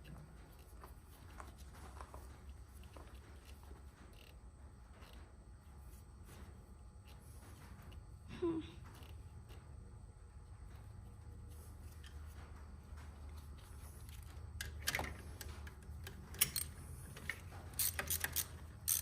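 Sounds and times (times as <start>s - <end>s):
steady low hum: 0.0s - 19.0s
metallic clicks and clanks of tools: 14.0s - 19.0s.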